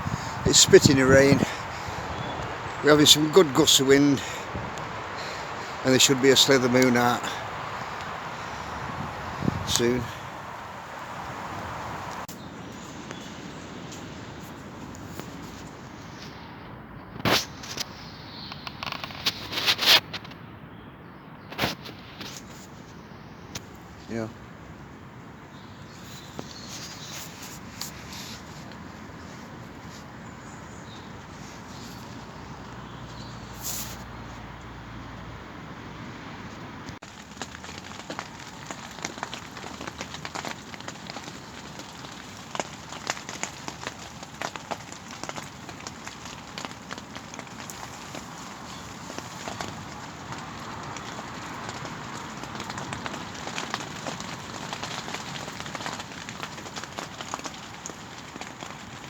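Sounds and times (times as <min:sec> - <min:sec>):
wind gusting: 0:00.0 - 0:16.0
light rain spitting: 0:00.0 - 0:16.4, 0:25.8 - 0:34.7, 0:36.9 - 0:59.0
short sharp crackle: 0:17.2 - 0:20.4.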